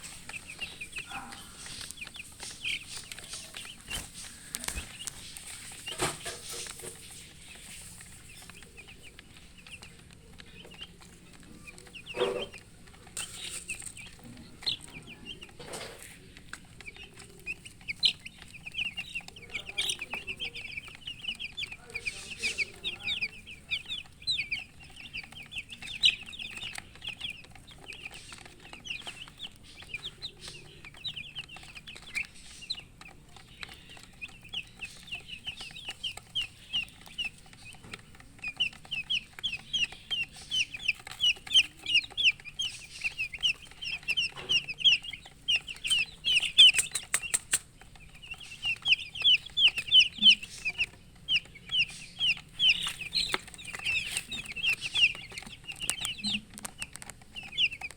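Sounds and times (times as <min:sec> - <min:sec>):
baby chicks peeping: 0:00.0 - 0:57.9
brief crackle: 0:45.8 - 0:47.8.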